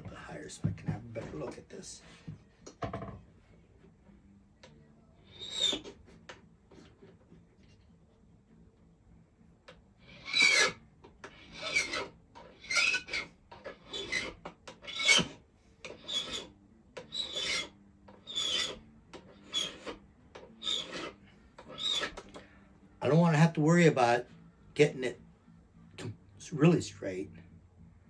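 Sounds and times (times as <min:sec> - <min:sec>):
hand file rasping on metal: 0:05.2 - 0:06.0, 0:10.0 - 0:22.4.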